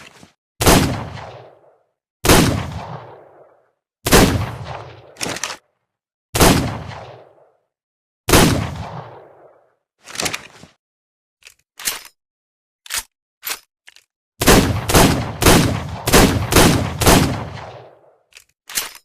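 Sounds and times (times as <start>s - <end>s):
revolver gunshots with echo: 0.6s - 5.2s, 6.4s - 7.6s, 8.3s - 9.7s, 14.4s - 18.2s.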